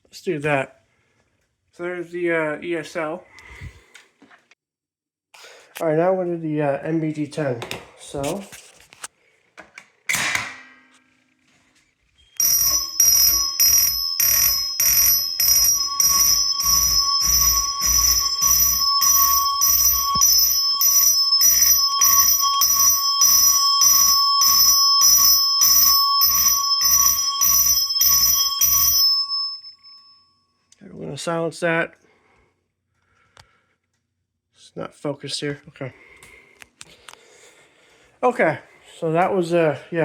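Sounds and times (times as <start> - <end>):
mechanical fire alarm chime: 12.4 - 30.7.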